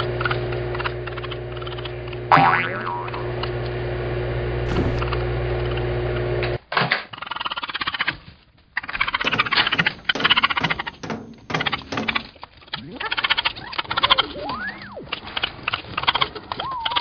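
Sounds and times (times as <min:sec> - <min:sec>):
microwave oven humming: 0:00.0 - 0:06.6.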